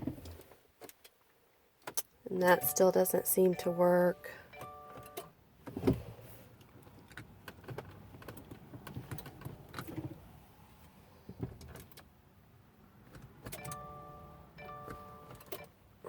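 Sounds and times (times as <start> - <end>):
electronic chime: 2.5 - 5.3.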